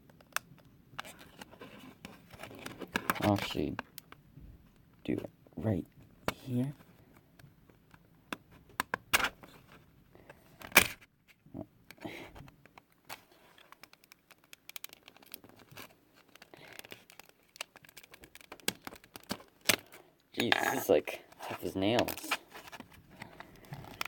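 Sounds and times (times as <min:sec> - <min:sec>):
sharp plastic snaps: 0:07.1 - 0:09.4, 0:11.8 - 0:20.6
plastic casing being pried open: 0:11.9 - 0:20.7.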